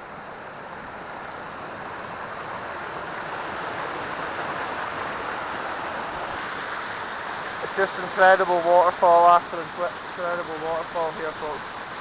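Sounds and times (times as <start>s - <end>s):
rushing water and waterfalls: 0.0s - 12.0s.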